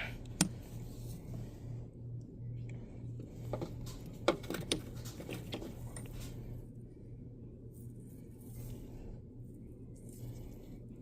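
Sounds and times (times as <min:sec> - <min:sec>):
low steady hum: 0:00.0 - 0:11.0
tools clicking and knocking: 0:03.5 - 0:06.3.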